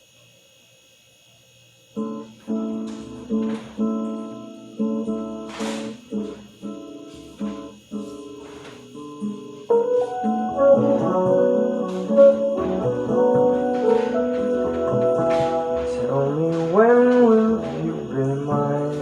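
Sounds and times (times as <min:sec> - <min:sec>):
strummed acoustic guitar: 0:02.0 - 0:19.0.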